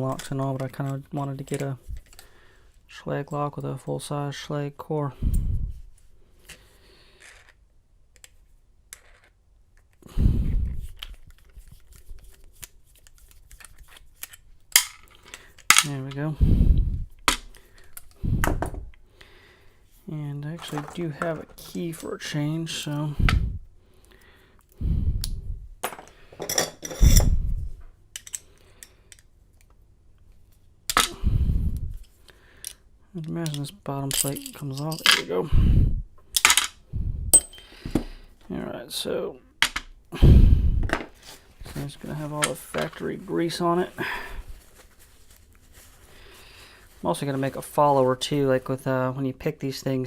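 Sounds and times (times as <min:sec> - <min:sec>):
light clicks of lock and tools: 0:28.1 - 0:29.8
keys and lock clinking: 0:33.5 - 0:35.3.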